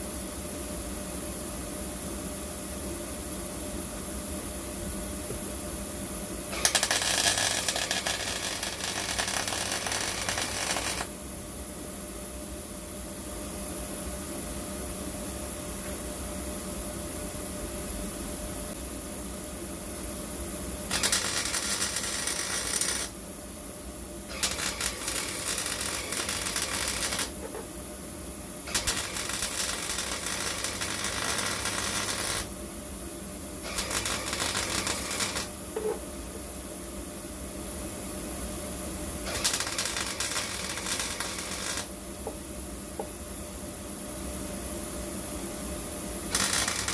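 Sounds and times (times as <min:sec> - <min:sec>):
welder crackling: 0:06.5 - 0:11.1, 0:20.9 - 0:23.2, 0:24.3 - 0:27.6, 0:28.6 - 0:32.6, 0:33.6 - 0:35.5, 0:39.3 - 0:42.0, 0:46.3 - 0:46.9.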